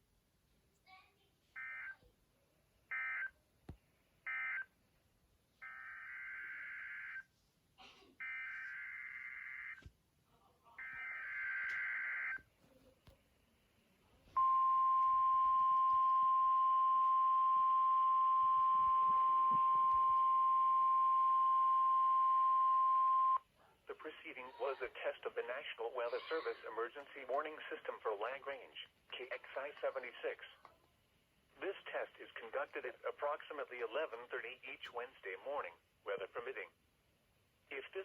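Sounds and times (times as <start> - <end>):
steady warning alarm tone: 1.6 - 1.9, 5.6 - 7.2, 8.2 - 9.8, 10.8 - 12.4, 14.4 - 23.4.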